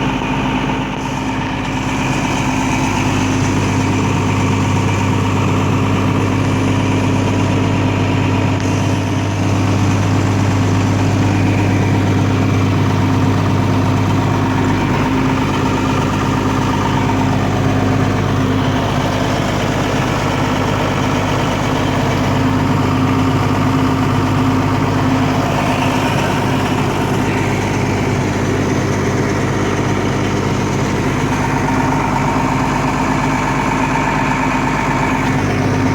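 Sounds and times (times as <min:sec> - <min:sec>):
tractor diesel engine idling: 0:00.0 - 0:35.9.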